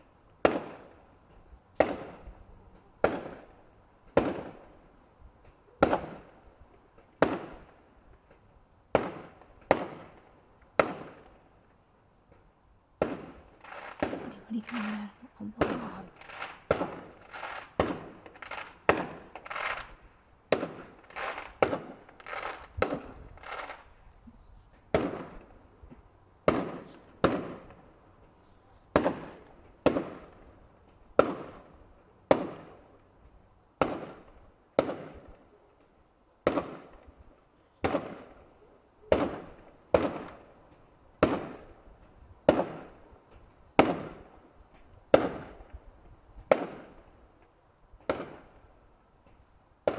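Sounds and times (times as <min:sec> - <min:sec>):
fireworks bangs with echo: 0:00.4 - 0:01.0, 0:01.8 - 0:02.4, 0:03.0 - 0:04.7, 0:05.8 - 0:06.4, 0:08.9 - 0:10.2, 0:10.8 - 0:11.3, 0:13.0 - 0:23.9, 0:24.9 - 0:25.6, 0:26.4 - 0:27.9, 0:28.9 - 0:30.3, 0:31.1 - 0:32.9, 0:33.8 - 0:35.4, 0:36.4 - 0:37.1, 0:37.8 - 0:38.4, 0:39.1 - 0:40.5, 0:41.2 - 0:41.8, 0:42.4 - 0:43.0, 0:43.8 - 0:44.4, 0:45.1 - 0:45.7, 0:46.5 - 0:47.0, 0:48.0 - 0:48.6.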